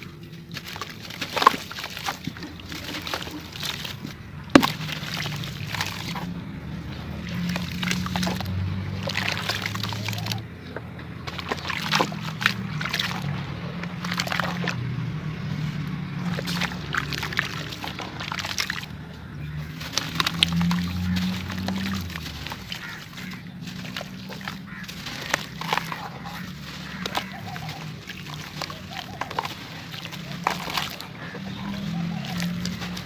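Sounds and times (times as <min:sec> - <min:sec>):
sand-cement crunching: 0:00.0 - 0:33.0.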